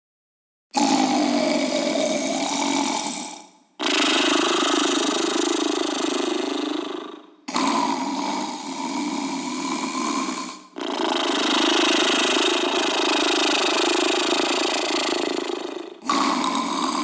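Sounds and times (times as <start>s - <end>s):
comical human snoring: 0.7s - 17.0s.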